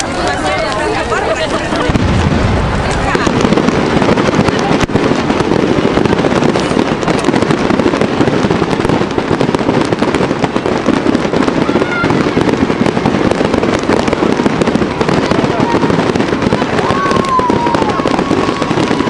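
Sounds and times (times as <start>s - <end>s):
fireworks bangs and crackles: 0.0s - 19.0s.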